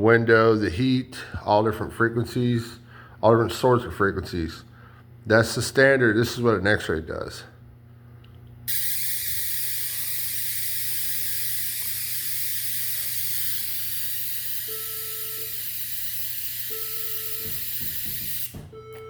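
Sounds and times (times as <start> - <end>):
low electrical hum: 0.0 - 19.0
machine high hiss: 8.7 - 18.7
short beeps: 14.5 - 19.0.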